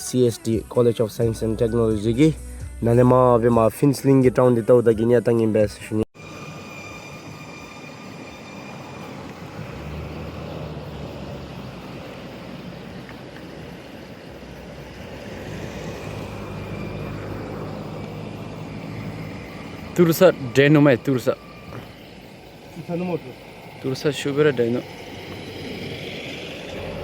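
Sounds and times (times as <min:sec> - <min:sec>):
vehicle engine and road noise: 0:06.1 - 0:27.0.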